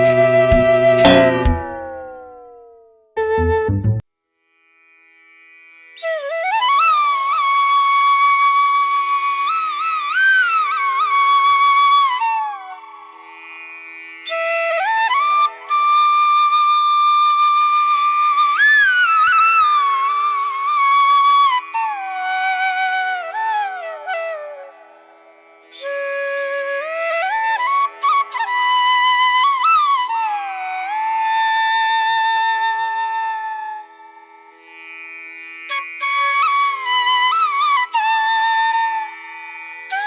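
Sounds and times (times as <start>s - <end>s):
wind instrument melody: 0.0s - 2.4s, 3.2s - 4.0s, 14.3s - 34.4s, 35.7s - 40.0s.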